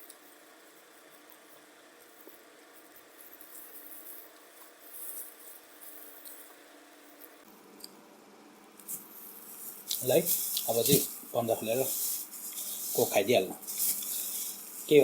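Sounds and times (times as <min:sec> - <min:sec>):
faint handling rustles and clicks: 0:08.8 - 0:15.0.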